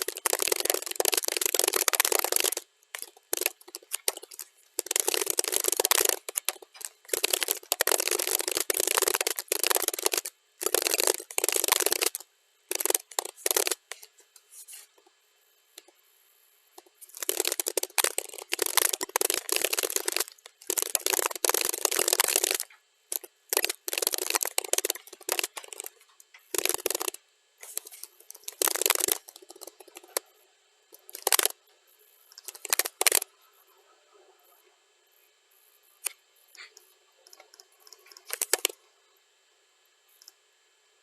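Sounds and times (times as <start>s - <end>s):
rapid keyboard typing clicks: 0.0s - 14.1s, 16.8s - 30.3s, 31.0s - 31.6s, 32.3s - 33.3s, 36.0s - 38.8s.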